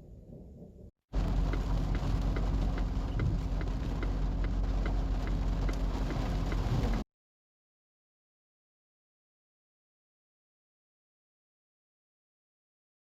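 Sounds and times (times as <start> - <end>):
low steady rumble: 0.0 - 7.0
faint regular ticking: 1.2 - 7.0
heavy rain falling: 1.2 - 7.0.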